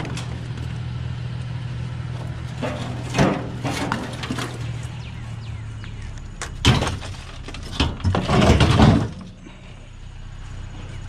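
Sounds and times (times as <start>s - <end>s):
metal clattering and scraping: 0.0s - 0.8s, 2.0s - 5.3s, 6.4s - 9.5s
scrap metal clanking: 2.1s - 5.2s, 6.4s - 9.6s.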